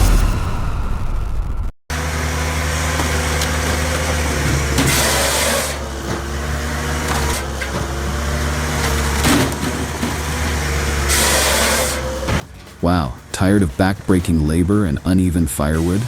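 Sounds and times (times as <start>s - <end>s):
heavy machinery engine running: 1.9s - 16.0s.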